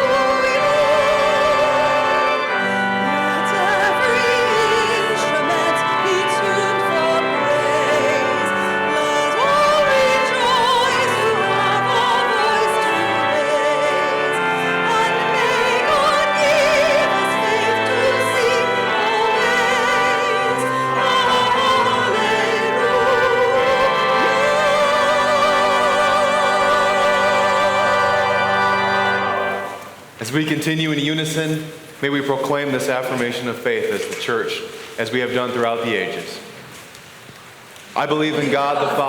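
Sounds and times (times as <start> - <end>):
person singing with vibrato: 0.0 - 29.9
sustained instrumental chords: 0.0 - 30.2.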